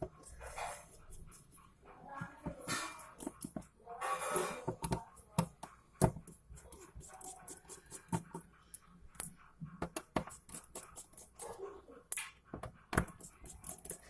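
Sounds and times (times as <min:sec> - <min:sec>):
sharp clicks and taps on plastic: 0:09.2 - 0:10.6.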